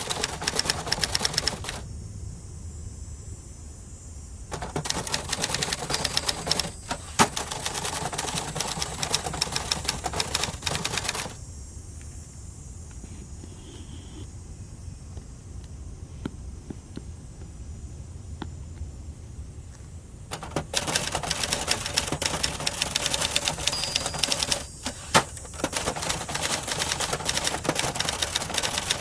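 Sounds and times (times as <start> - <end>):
manual typewriter key strikes: 0.0 - 1.8, 4.5 - 11.4, 20.3 - 29.0.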